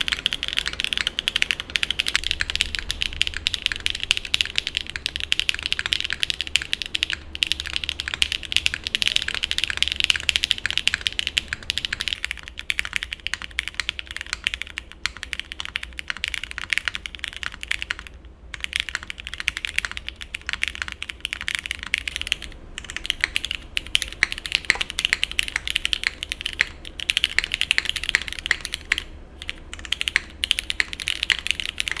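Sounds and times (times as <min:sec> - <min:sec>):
mechanical keyboard typing: 0:00.0 - 0:32.0.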